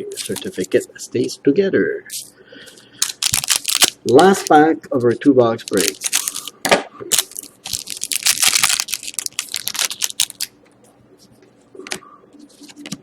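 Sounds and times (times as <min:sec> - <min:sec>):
wrapper tearing and crinkling: 0:03.0 - 0:04.5, 0:05.7 - 0:06.5, 0:07.1 - 0:10.5.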